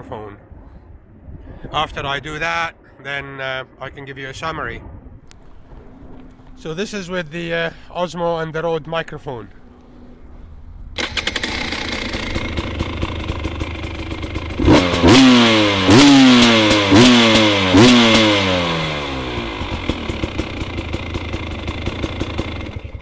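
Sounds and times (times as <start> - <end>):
dirt bike engine idling and revving: 9.6 - 23.0.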